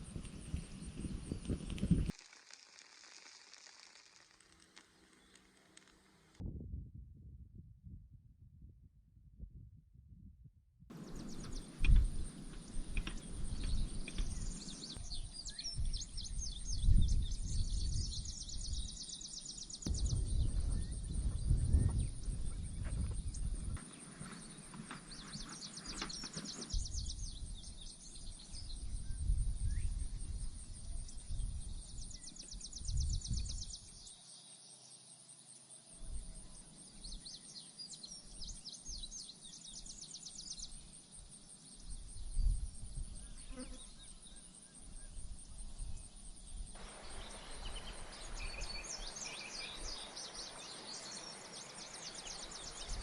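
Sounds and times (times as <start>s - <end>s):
high-pitched hiss: 10.9s - 53.0s.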